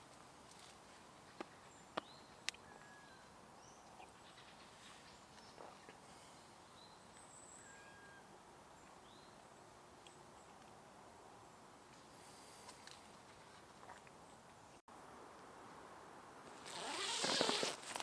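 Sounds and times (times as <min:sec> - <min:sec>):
faint bird chirps and whistles: 0:06.7 - 0:08.3.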